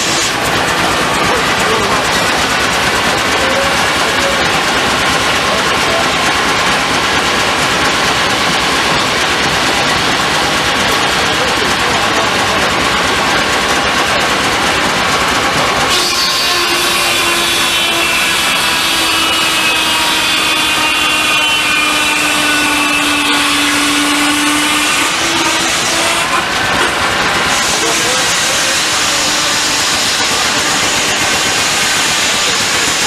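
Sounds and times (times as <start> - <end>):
sawmill noise: 0.0 - 33.0
saw whining with ringing overtones: 15.8 - 26.5.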